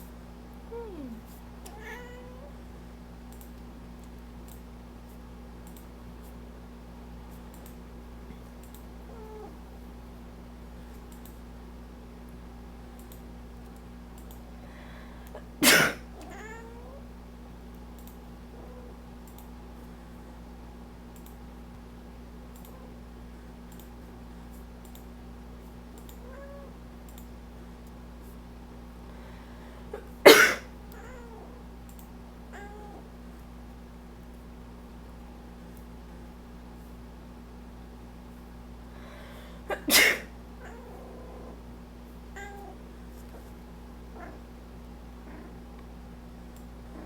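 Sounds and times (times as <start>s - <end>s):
steady low hum: 0.0s - 47.0s
cat meowing: 0.8s - 2.5s, 16.2s - 17.0s, 32.5s - 33.0s, 42.4s - 42.8s
faint clicks: 3.3s - 4.7s, 5.6s - 5.9s, 7.4s - 8.9s, 10.9s - 11.4s, 13.0s - 14.4s, 17.7s - 18.2s, 19.2s - 19.6s, 21.2s - 21.4s, 22.5s - 22.8s, 23.7s - 25.1s, 25.9s - 26.3s, 27.0s - 28.0s, 31.8s - 32.2s.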